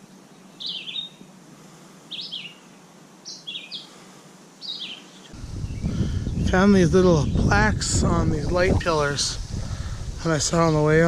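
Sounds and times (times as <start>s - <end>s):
bird chirping: 0.0s - 1.2s, 2.1s - 3.9s, 4.6s - 7.5s.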